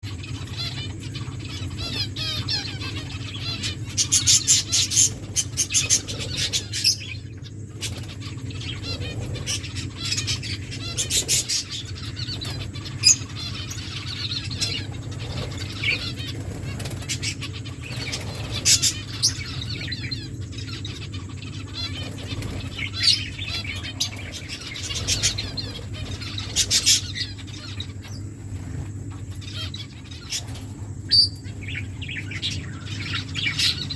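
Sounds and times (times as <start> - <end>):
finches chirping and twittering: 0.0 - 33.9
wings flapping: 14.6 - 20.0, 21.8 - 27.4, 28.0 - 29.7.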